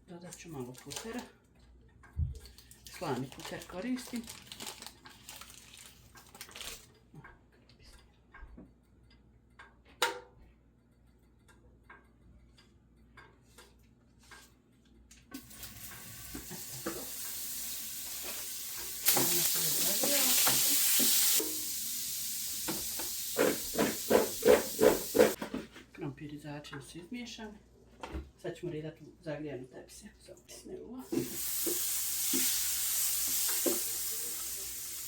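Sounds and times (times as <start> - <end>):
butter and oil sizzling: 15.3 - 25.4, 31.0 - 35.0.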